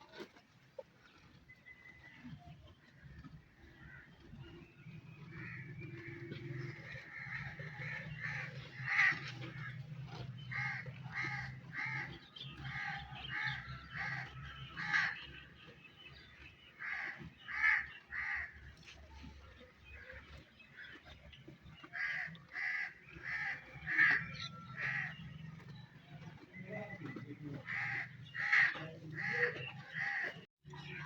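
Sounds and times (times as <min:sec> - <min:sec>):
crows cawing: 0:03.8 - 0:04.1, 0:05.4 - 0:09.8, 0:10.5 - 0:15.2, 0:16.8 - 0:18.6, 0:21.9 - 0:25.2, 0:27.6 - 0:30.4.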